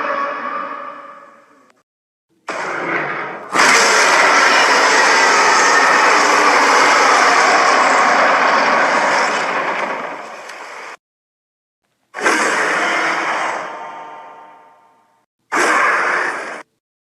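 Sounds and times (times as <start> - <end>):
harsh monster roar: 2.5 - 10.3, 12.2 - 13.8, 15.5 - 16.7.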